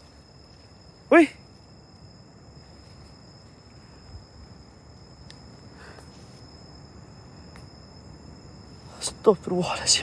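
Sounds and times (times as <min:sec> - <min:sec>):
insects trilling: 0:00.0 - 0:10.0
faint click: 0:05.2 - 0:05.4.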